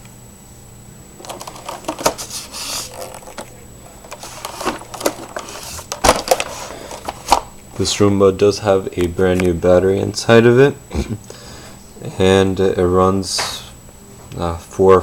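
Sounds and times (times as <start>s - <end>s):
hard plastic parts rattling: 1.2s - 7.5s.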